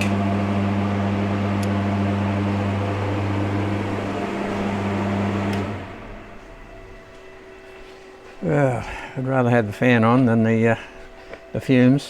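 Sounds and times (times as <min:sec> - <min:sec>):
electric fan humming: 0:00.0 - 0:10.6
fan switch click: 0:01.5 - 0:01.8.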